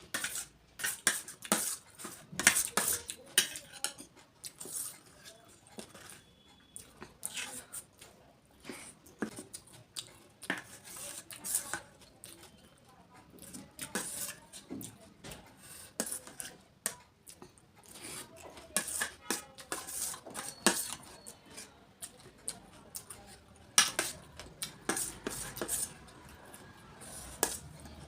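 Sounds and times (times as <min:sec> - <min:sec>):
utensils clinking on plate: 0:19.7 - 0:21.7.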